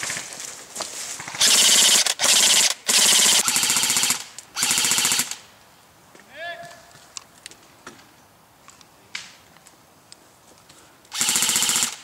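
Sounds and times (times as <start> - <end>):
airsoft gun firing bursts: 1.2 - 5.4, 11.1 - 12.0.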